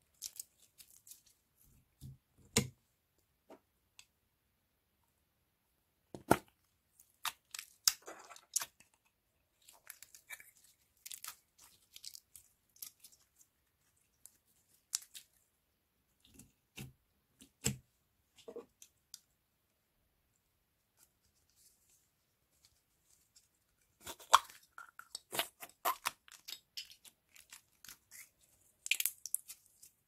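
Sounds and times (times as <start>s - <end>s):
slime squishing: 7.0s - 15.4s, 23.9s - 30.0s.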